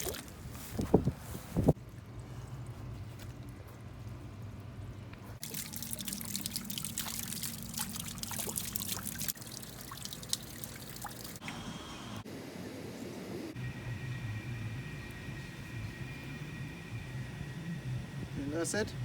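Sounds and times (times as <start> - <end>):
water trickling and splattering: 0.0 - 3.7, 5.4 - 11.7.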